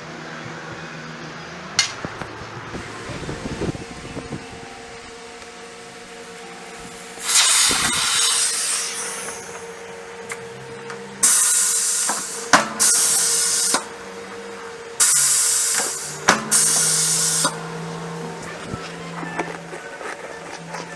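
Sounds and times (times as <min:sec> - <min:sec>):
pressurised spray hissing: 0:02.7 - 0:10.3, 0:11.2 - 0:18.5.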